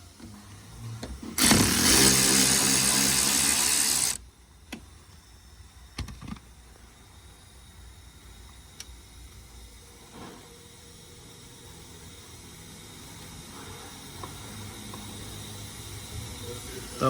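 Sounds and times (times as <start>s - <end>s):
power tool spinning nuts: 1.3s - 4.2s.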